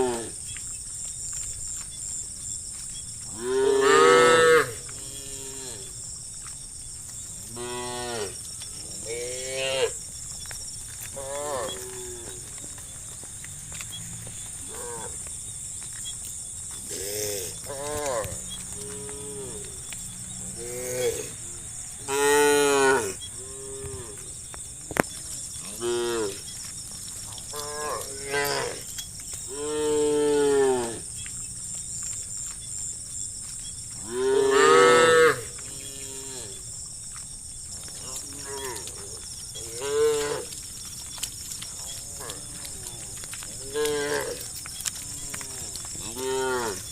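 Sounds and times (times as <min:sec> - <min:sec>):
cows mooing: 0:03.3 - 0:05.9, 0:07.5 - 0:10.0, 0:11.1 - 0:13.0, 0:16.8 - 0:24.3, 0:25.6 - 0:26.4, 0:27.4 - 0:28.9, 0:29.5 - 0:31.1, 0:34.0 - 0:36.6, 0:38.0 - 0:40.6, 0:41.8 - 0:46.9.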